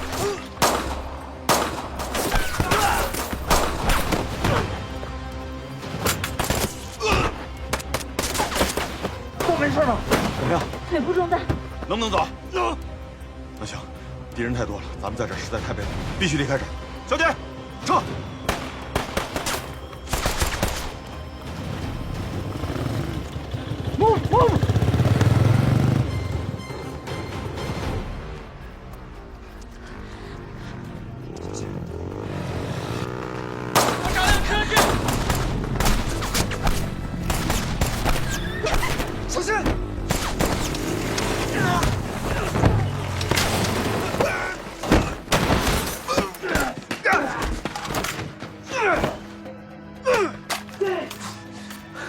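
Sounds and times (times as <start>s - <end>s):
gunfire: 0.0s - 2.8s, 18.5s - 21.0s, 33.7s - 39.2s, 40.0s - 40.9s
dramatic film music: 0.0s - 52.0s
rifle and machine-gun shots: 18.5s - 21.0s, 33.7s - 41.2s.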